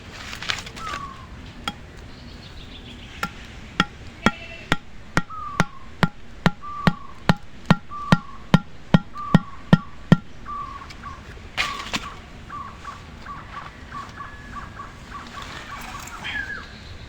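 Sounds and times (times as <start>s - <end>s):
rustle: 0.0s - 5.1s, 9.9s - 17.0s
bird chirping: 0.7s - 17.0s
sharp knocks: 1.7s - 2.0s, 3.1s - 10.7s.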